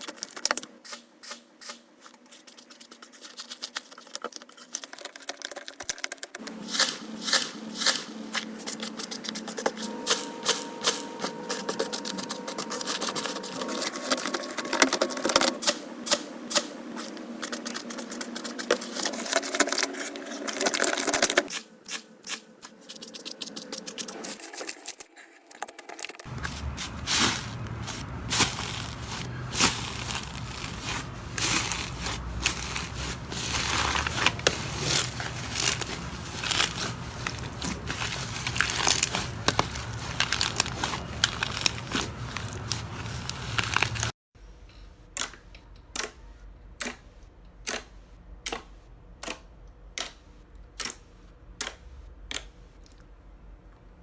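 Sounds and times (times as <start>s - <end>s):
slime squeezed crackling: 26.3s - 44.1s.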